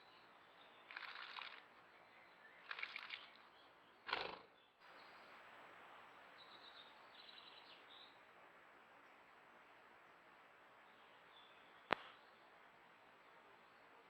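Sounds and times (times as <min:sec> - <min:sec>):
bird splashing and wing flutter: 0:00.9 - 0:01.7, 0:02.6 - 0:03.4, 0:04.1 - 0:04.5
low hiss: 0:01.6 - 0:14.0.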